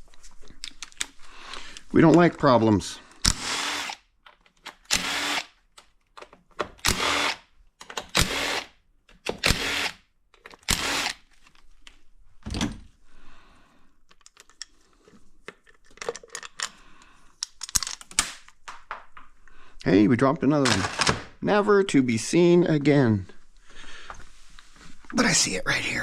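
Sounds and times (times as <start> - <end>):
power drill bursts: 3.2 - 4.0, 4.9 - 5.5, 6.8 - 7.4, 8.1 - 8.7, 9.4 - 10.0, 10.7 - 11.2
small parts clicking and clattering: 4.2 - 5.1, 5.7 - 7.0, 10.3 - 12.0, 14.0 - 19.3.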